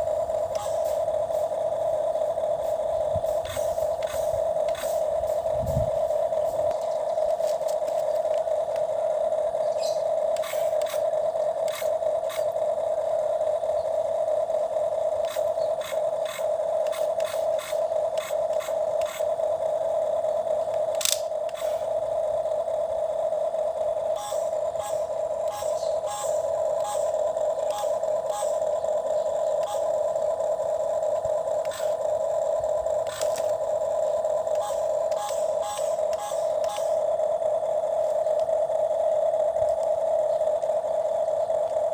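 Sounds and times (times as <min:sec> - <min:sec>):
small electric motor whirring: 0:00.0 - 0:41.9
plastic gears clicking: 0:03.4 - 0:05.4, 0:10.2 - 0:12.7, 0:15.1 - 0:19.4, 0:20.5 - 0:21.9, 0:24.2 - 0:37.2.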